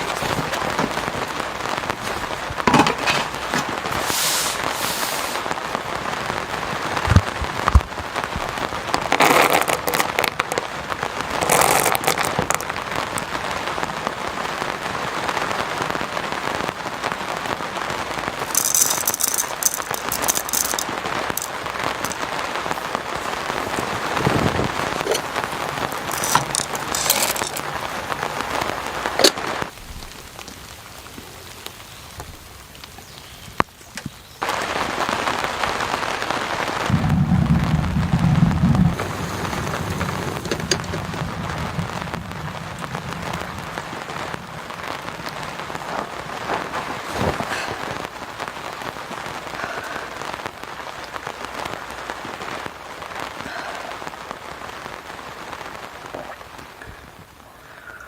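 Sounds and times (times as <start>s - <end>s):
sharp crackles: 0.0s - 57.5s
heavy rain patter: 0.0s - 58.0s.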